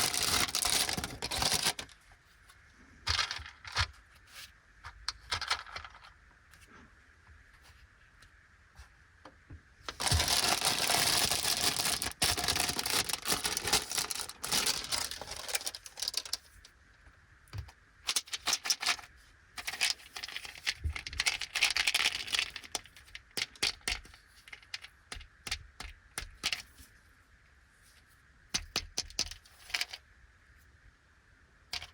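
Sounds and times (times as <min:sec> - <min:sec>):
plastic packaging crinkling: 0:00.0 - 0:02.0, 0:09.9 - 0:16.6
sweets clicking and rattling: 0:00.0 - 0:02.0, 0:09.9 - 0:16.5.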